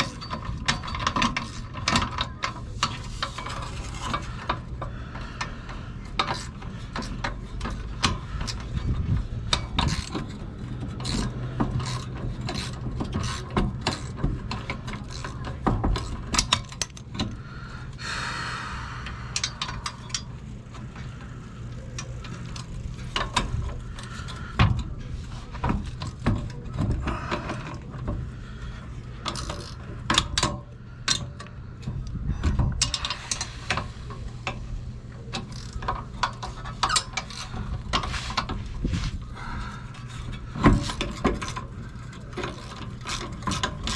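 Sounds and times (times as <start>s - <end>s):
ratchet clicking: 0.0s - 17.4s, 32.8s - 38.5s
low steady hum: 0.0s - 43.9s.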